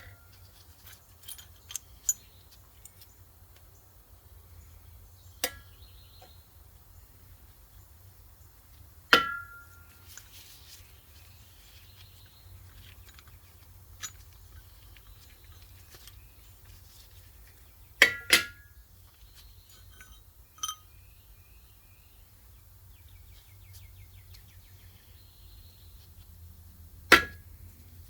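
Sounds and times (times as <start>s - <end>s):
sharp metal clinks: 1.2s - 2.4s, 19.7s - 21.0s.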